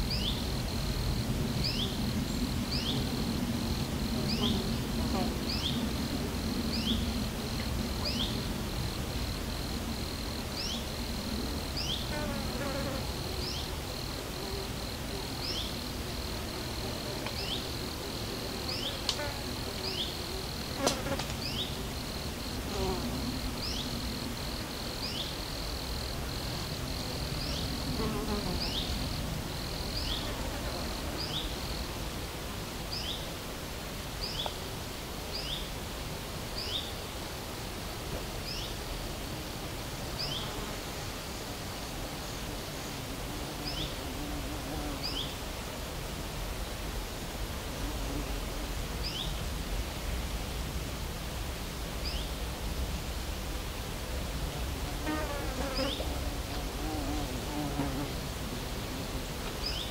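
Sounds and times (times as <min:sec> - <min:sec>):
high pulsing insect trill: 0:00.0 - 0:32.1
flying insect buzzing past: 0:18.7 - 0:25.2, 0:26.9 - 0:31.8, 0:54.8 - 0:59.9.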